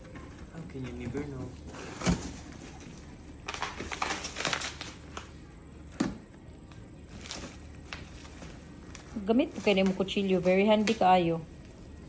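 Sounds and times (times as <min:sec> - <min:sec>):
packaging rustling and crinkling: 0:00.8 - 0:05.4, 0:07.1 - 0:11.2.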